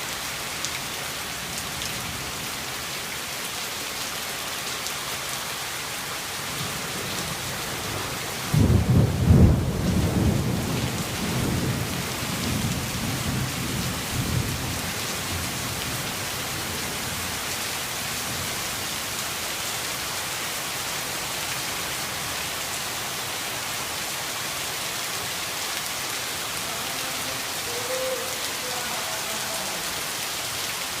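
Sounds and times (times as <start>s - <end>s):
heavy rain falling: 0.0s - 31.0s
thunder rumbling: 8.5s - 14.8s.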